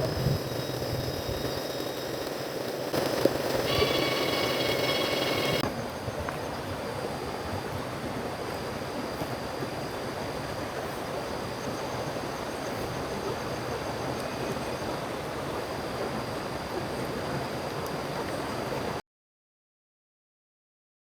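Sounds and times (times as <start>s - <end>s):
faint high-pitched tone: 0.0s - 5.6s.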